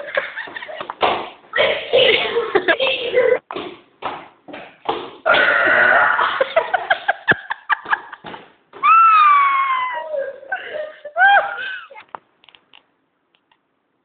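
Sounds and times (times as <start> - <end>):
loud rough burp: 5.3 - 6.4.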